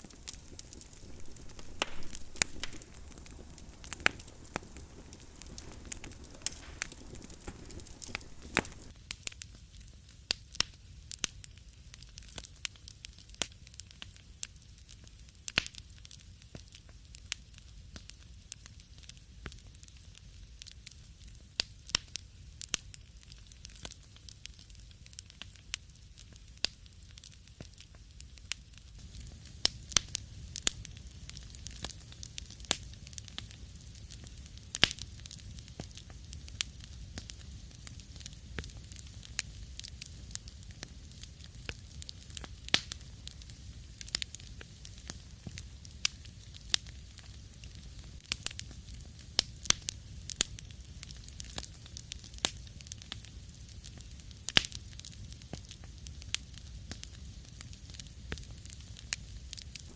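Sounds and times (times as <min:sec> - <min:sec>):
hiss of burning: 0:00.0 - 0:09.0, 0:29.0 - 0:59.9
wood fire crackling and popping: 0:00.0 - 0:59.9.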